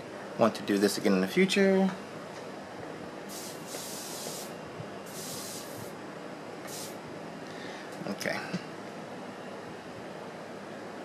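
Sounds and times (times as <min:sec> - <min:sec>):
aerosol spray hissing: 0:03.3 - 0:06.0, 0:06.6 - 0:07.0.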